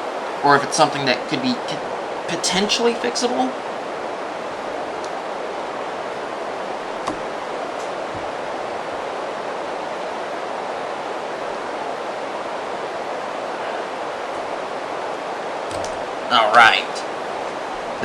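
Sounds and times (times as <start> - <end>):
microphone hiss: 0.0 - 18.0
handling ticks: 15.7 - 16.2.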